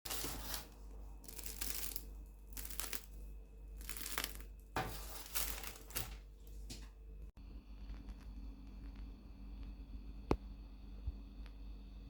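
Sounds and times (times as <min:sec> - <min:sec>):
crinkling rustling: 0:00.1 - 0:06.9.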